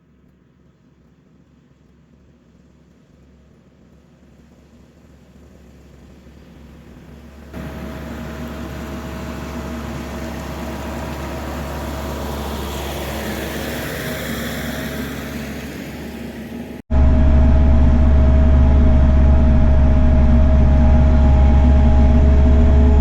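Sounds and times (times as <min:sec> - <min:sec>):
tractor diesel engine running: 0:07.6 - 0:23.0.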